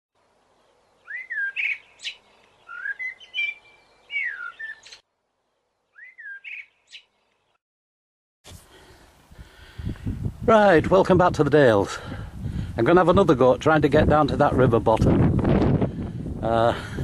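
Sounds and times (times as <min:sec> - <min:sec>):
songbird singing: 0:00.2 - 0:07.6.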